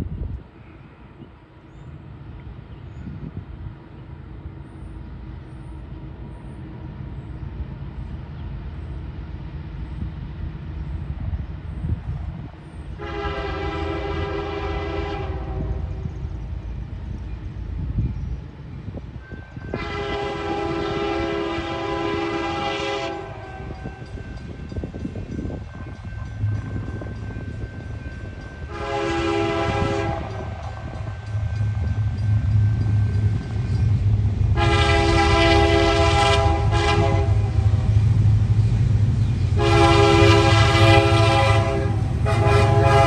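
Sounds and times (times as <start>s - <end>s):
low rumble of locomotives: 0.0s - 43.0s
locomotive air horn blasts: 13.0s - 15.9s, 19.7s - 24.1s, 28.6s - 32.0s, 34.6s - 37.9s, 39.6s - 43.0s.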